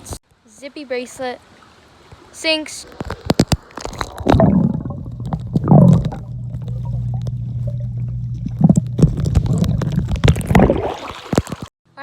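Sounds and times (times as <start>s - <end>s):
muffled water sloshing: 2.9s - 11.7s
steady low hum: 4.3s - 10.2s.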